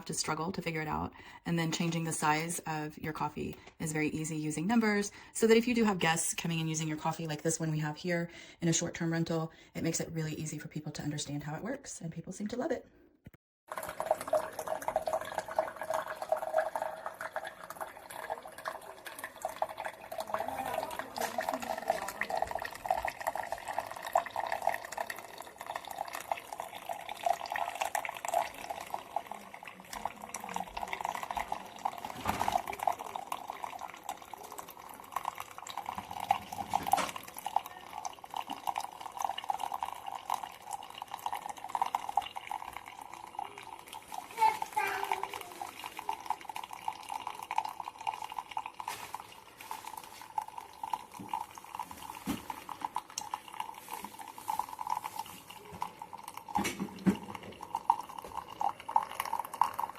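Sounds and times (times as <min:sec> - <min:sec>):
coffee maker liquid bubbling: 0:00.0 - 0:11.5, 0:13.7 - 0:59.9.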